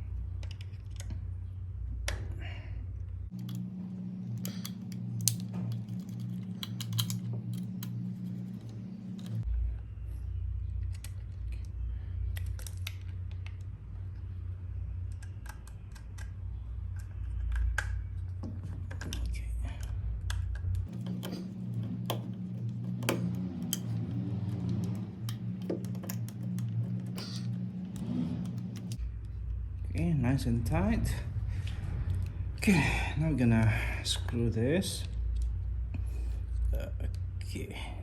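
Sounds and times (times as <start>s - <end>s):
steady low hum: 0.0s - 12.4s, 13.0s - 38.0s
screwdriver and switch clicks: 3.4s - 3.7s, 4.3s - 9.4s, 20.9s - 29.0s.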